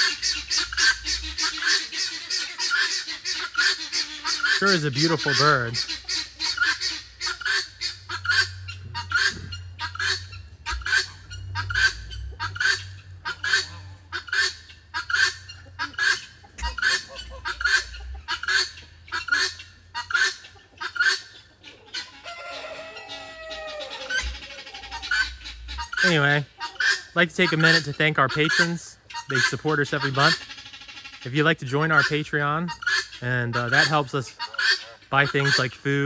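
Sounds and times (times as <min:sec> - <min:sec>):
guinea fowl calling: 0:00.0 - 0:35.9
held bird call: 0:22.0 - 0:35.8.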